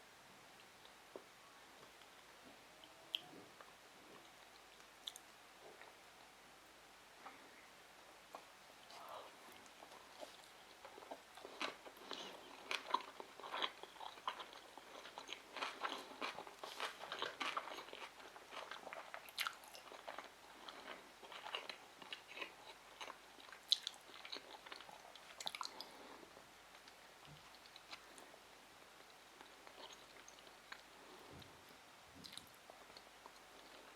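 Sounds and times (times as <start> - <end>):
chewing wet clicks and crunches: 4.5 - 5.3, 9.6 - 26.0.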